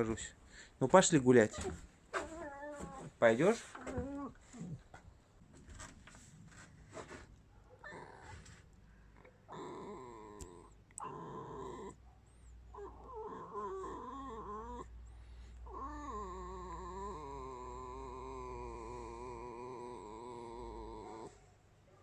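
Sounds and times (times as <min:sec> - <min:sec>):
fox whining: 0:01.5 - 0:05.0, 0:07.8 - 0:08.5, 0:09.2 - 0:12.0, 0:12.7 - 0:21.4.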